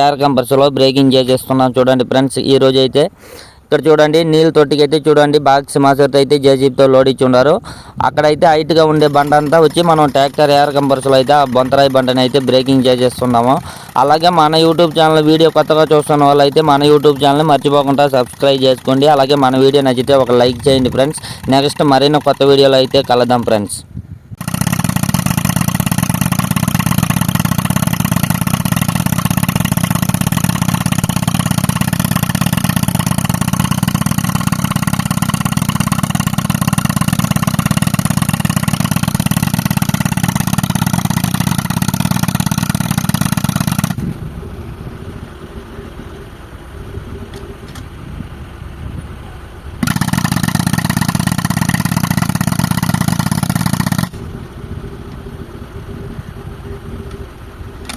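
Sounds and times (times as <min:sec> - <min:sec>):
compressor engine running: 0:08.6 - 0:23.5, 0:24.4 - 0:57.9
pneumatic rock breaker hammering: 0:24.4 - 0:43.1, 0:49.8 - 0:54.2.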